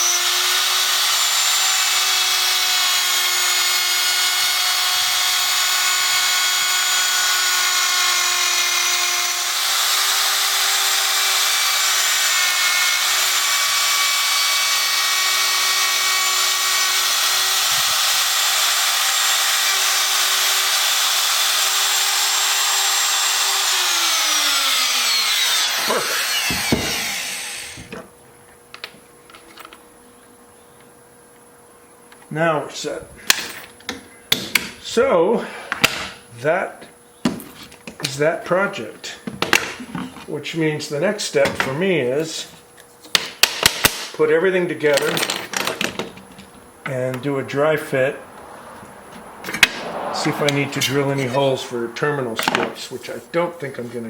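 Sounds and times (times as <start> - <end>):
power tool motor whining: 0.0 - 28.0.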